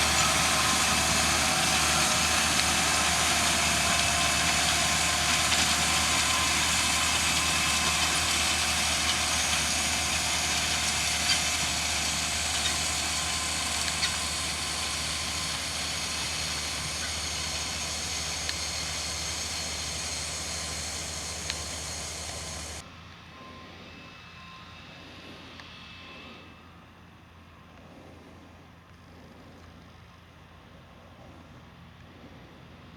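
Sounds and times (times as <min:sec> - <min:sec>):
tractor running: 0:00.0 - 0:23.3
hiss of field machinery: 0:00.0 - 0:27.0.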